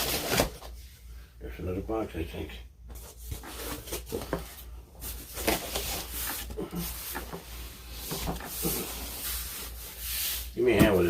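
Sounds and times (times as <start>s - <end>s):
cardboard scraping and rubbing: 3.0s - 11.0s.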